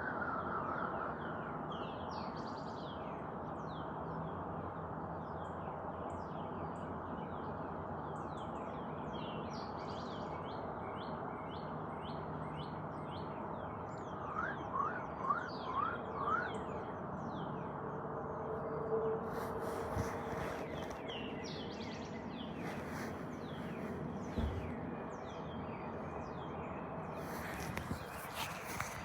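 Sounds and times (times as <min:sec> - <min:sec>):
birds chirping: 0:19.1 - 0:29.0.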